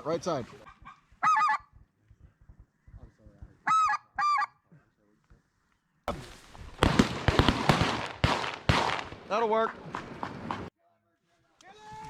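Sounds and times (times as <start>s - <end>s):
goose yelps: 0.6s - 1.7s, 3.6s - 4.6s.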